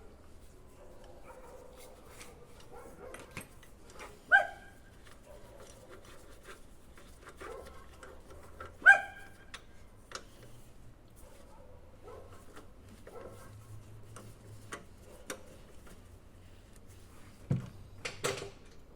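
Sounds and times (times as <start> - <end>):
dog barking: 0.7 - 5.8, 7.4 - 7.8, 8.8 - 9.4, 11.2 - 12.4, 13.1 - 13.5
faint clicks and knocks: 0.9 - 4.2.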